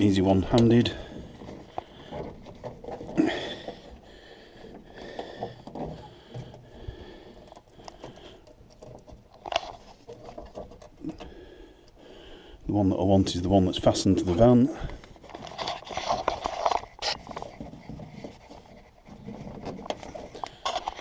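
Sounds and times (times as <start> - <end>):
plastic connectors clicking and scraping: 0.0 - 4.0, 4.6 - 12.0, 14.9 - 21.0.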